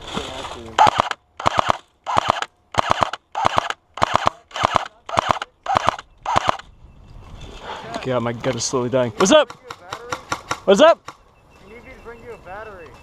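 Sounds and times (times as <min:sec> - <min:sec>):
airsoft gun firing bursts: 0:00.8 - 0:06.6.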